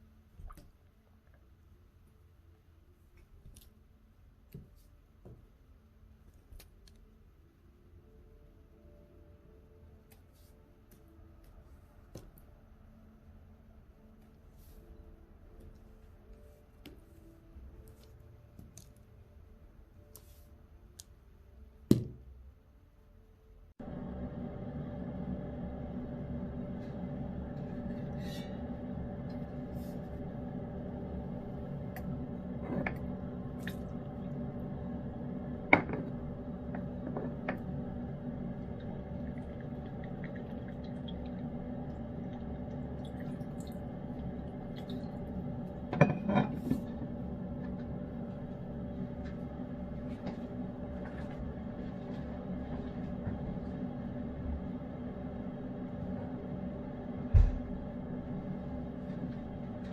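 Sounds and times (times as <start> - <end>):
steady hum: 23.6 - 59.9.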